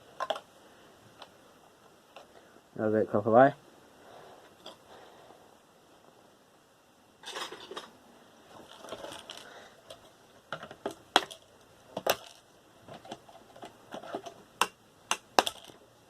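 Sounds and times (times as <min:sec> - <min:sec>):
small metal parts clattering: 0:07.2 - 0:14.4, 0:15.4 - 0:15.8.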